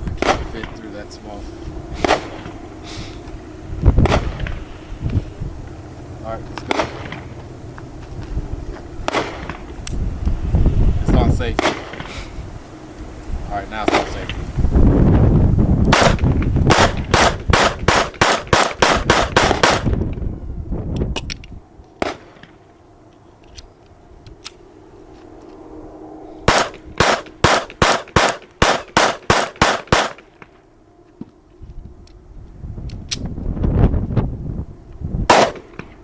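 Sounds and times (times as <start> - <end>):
rapid gunshots: 15.9 - 19.9, 26.5 - 30.2, 35.3 - 35.7.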